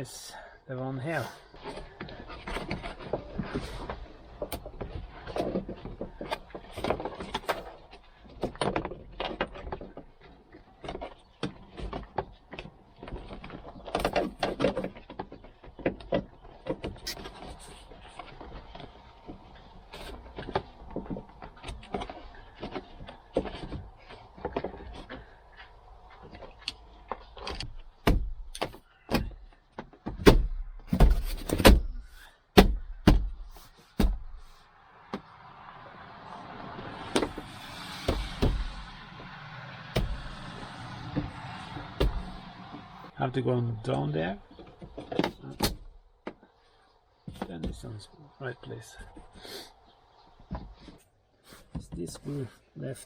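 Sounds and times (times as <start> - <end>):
seat belt and plastic trim rattling: 1.6 - 34.6, 40.0 - 43.0, 44.4 - 46.4
loud thumps: 30.1 - 34.4, 37.1 - 43.0.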